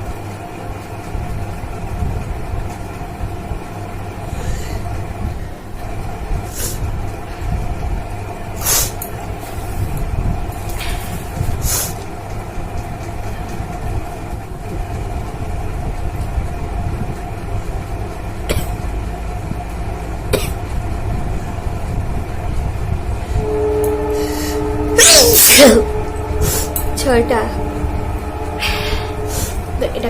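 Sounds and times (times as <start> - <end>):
low rumble: 12.5 - 30.0
faint held tone: 23.4 - 29.8
woman sneezing loudly: 25.0 - 25.8.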